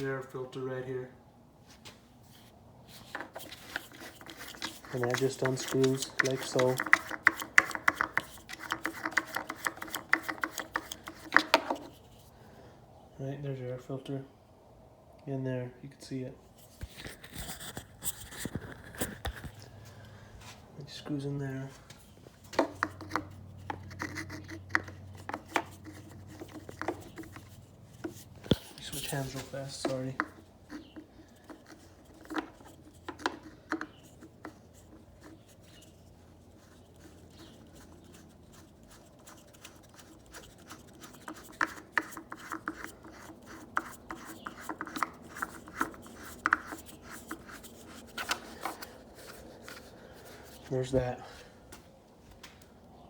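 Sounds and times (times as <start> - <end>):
filter threads scraping: 2.4 - 12.4, 16.6 - 51.4
plastic housing clicks and knocks: 3.2 - 11.9.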